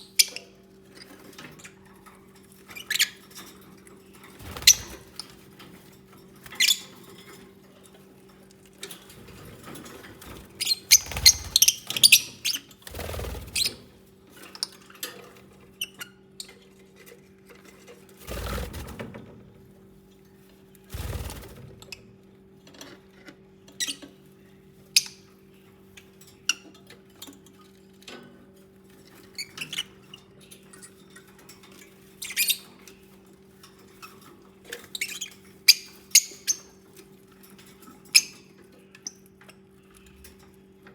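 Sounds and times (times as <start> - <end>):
squeaky bird chirps: 0.0 - 0.6, 4.5 - 5.2, 10.6 - 12.8, 32.2 - 32.7, 34.9 - 36.7
birds scratching and tapping: 0.1 - 40.9.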